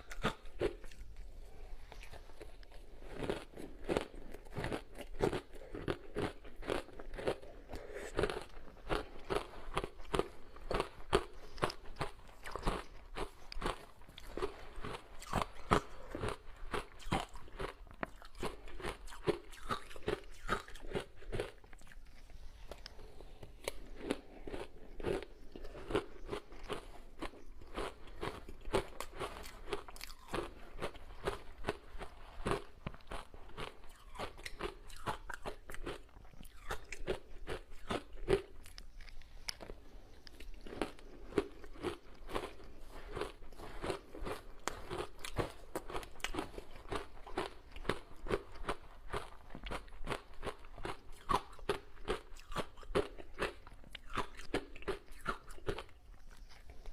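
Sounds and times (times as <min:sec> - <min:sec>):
person chewing ice: 0:00.0 - 0:56.9.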